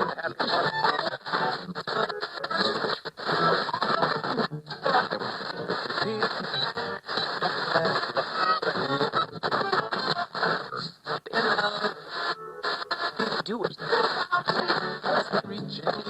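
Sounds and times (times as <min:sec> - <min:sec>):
radio tuning between stations: 0:00.0 - 0:16.0
radio voices: 0:00.0 - 0:16.0
snatches of radio music: 0:00.0 - 0:16.0.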